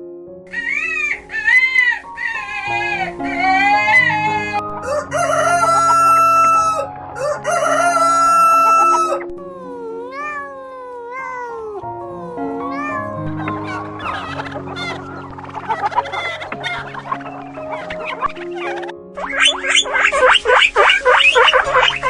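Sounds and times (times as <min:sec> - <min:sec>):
background music: 0:00.0 - 0:22.0
rooster crowing: 0:04.8 - 0:13.1.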